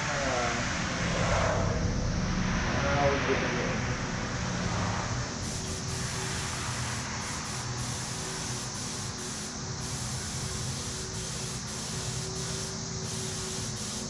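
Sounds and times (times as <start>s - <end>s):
steady low hum: 0.0s - 14.0s
paint spray gun hissing: 5.4s - 14.0s.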